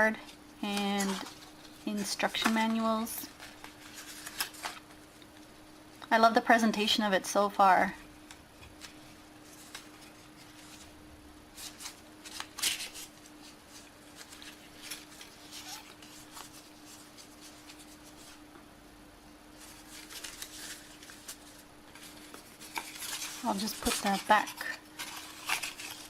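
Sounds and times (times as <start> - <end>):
faint steady hum: 0.0 - 26.0
paper packaging rustling and tapping: 19.6 - 26.0.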